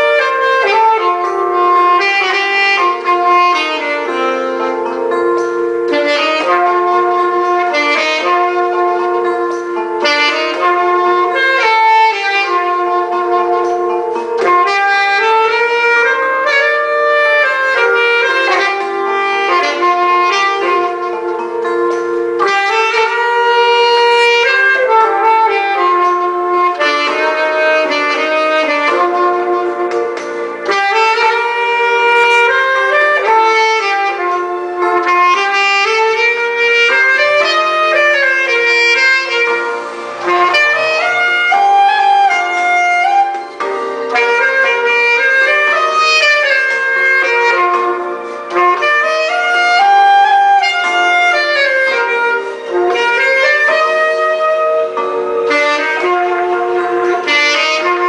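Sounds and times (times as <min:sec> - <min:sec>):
alto saxophone smooth jazz melody: 0:00.0 - 0:58.0
sustained accompaniment chords: 0:00.0 - 0:58.0.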